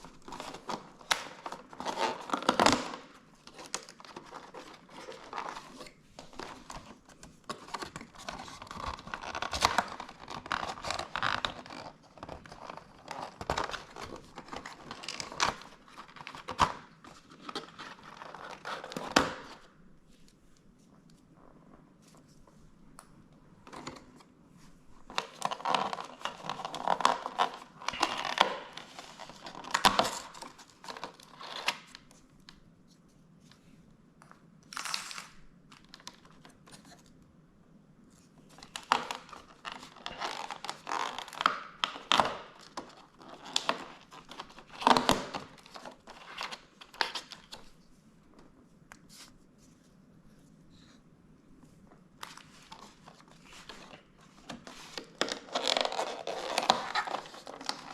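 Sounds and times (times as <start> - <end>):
cardboard and paper tearing: 54.7 - 57.9.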